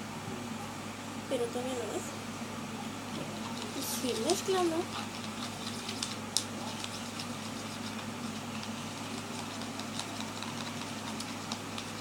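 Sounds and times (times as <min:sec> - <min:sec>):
slime being stirred: 0:03.2 - 0:12.0.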